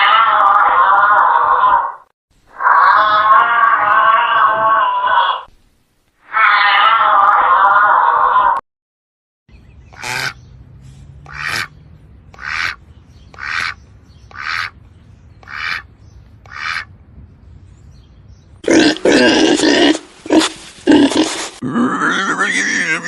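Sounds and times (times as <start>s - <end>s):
loud continuous animal noise: 0.0s - 5.5s, 6.2s - 8.6s, 9.8s - 10.6s, 11.2s - 14.8s, 15.4s - 16.9s.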